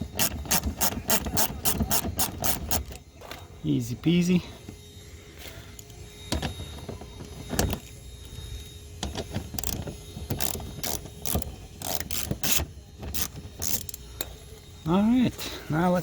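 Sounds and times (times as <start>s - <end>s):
socket wrench clicks and rattles: 9.0s - 14.0s.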